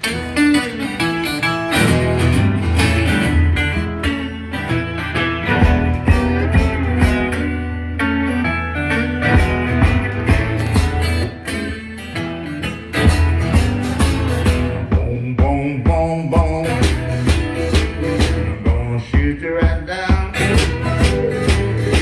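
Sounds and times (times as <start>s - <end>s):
guitar riff: 0.0s - 22.0s
bass line: 1.8s - 11.7s, 13.0s - 22.0s
drum beat: 5.6s - 7.5s, 9.3s - 11.3s, 13.0s - 22.0s.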